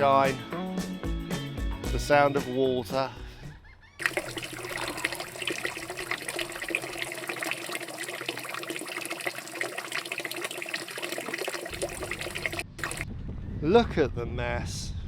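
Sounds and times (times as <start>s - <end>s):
water splashing and lapping: 4.0s - 13.1s.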